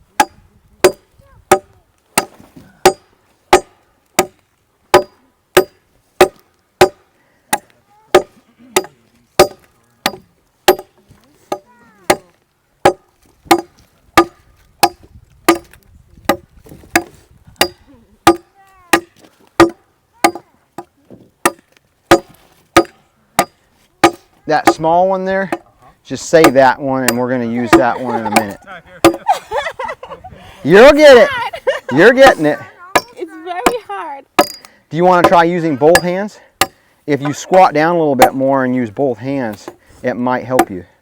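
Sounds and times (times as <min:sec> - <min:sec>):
machete chopping wood: 0:00.2 - 0:24.9, 0:34.4 - 0:38.3.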